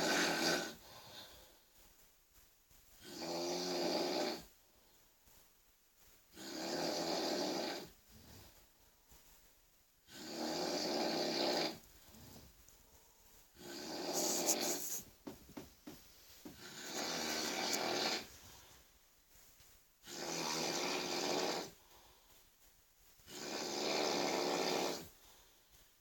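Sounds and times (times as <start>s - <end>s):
person snoring loudly: 0.0s - 0.8s, 6.3s - 7.9s, 10.1s - 11.8s, 13.6s - 14.8s, 16.6s - 18.3s, 20.0s - 21.8s, 23.3s - 25.1s.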